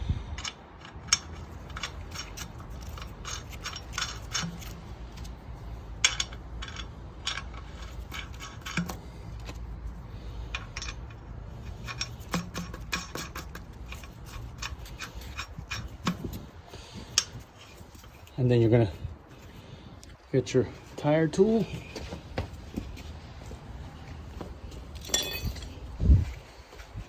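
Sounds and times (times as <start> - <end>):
low steady hum: 0.0 - 27.0
lug nuts clinking on studs: 0.3 - 18.4, 25.0 - 25.8.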